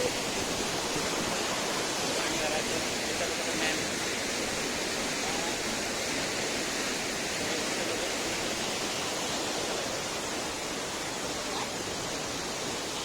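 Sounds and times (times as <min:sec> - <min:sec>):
waterfall pouring and splashing: 0:00.0 - 0:13.0.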